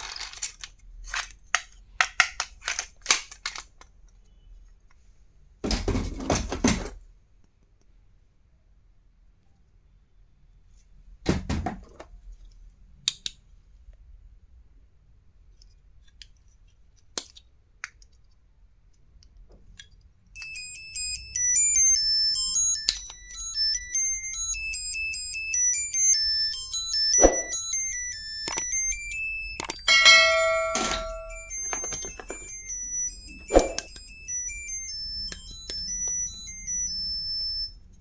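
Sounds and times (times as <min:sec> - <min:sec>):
electronic beeping ringtone tune: 0:20.4 - 0:38.0.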